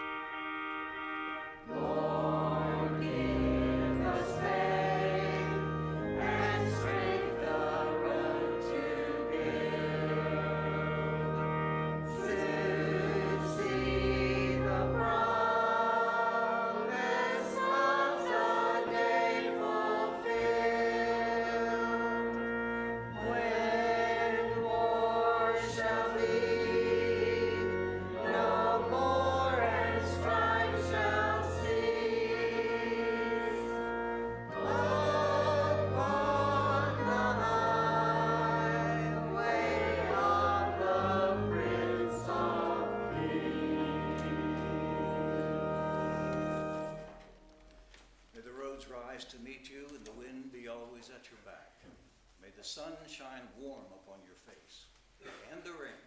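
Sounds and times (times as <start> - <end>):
church choir singing: 0.0 - 47.8
instrumental accompaniment: 0.0 - 48.4.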